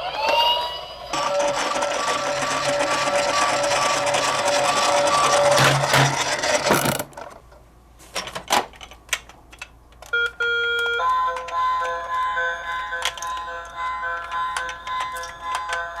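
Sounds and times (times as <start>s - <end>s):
toy cars rattling: 1.2s - 7.4s.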